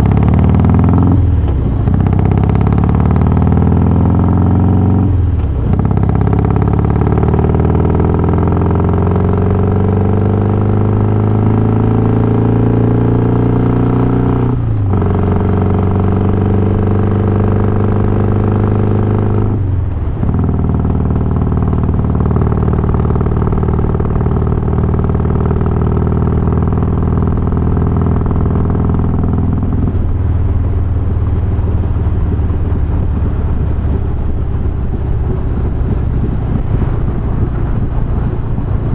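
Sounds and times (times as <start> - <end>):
motorcycle engine under way: 0.0 - 38.9.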